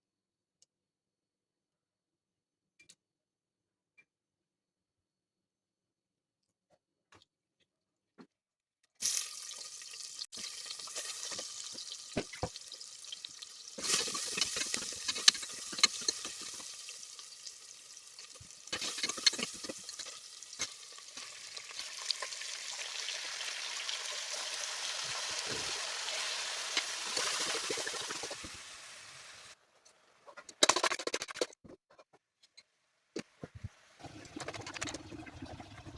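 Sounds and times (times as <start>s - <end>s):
food sizzling in oil: 9.0s - 29.6s
spoon scraping a pan: 13.8s - 16.9s, 18.7s - 21.3s.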